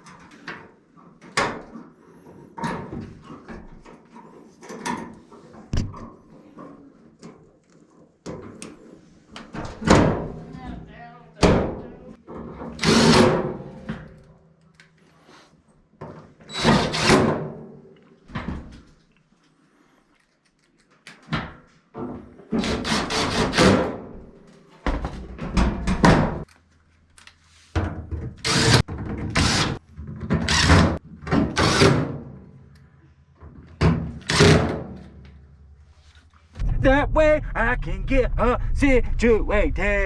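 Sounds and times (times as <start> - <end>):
knocks and thunks: 5.7 - 6.1.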